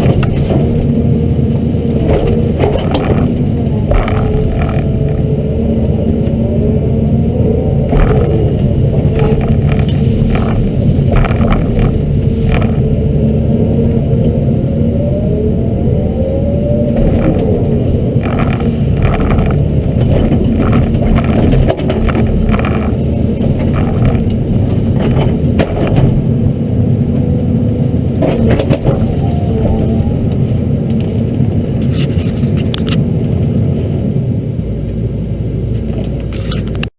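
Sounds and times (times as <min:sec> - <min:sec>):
hydraulic whine: 0:00.0 - 0:31.4
excavator diesel engine under load: 0:00.0 - 0:36.9
brush cracking and knocking: 0:02.0 - 0:06.4, 0:07.8 - 0:13.1, 0:17.0 - 0:26.3.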